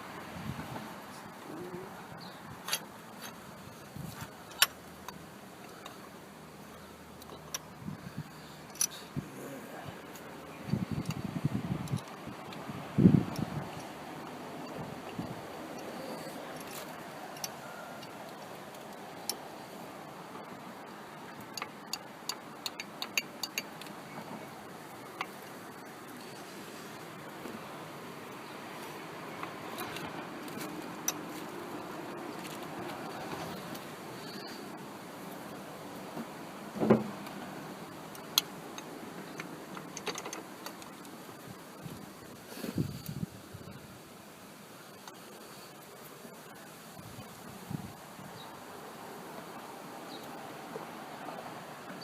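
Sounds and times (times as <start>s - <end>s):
low hiss: 0.0s - 52.0s
hand tool clicks: 8.7s - 9.0s, 21.4s - 24.0s.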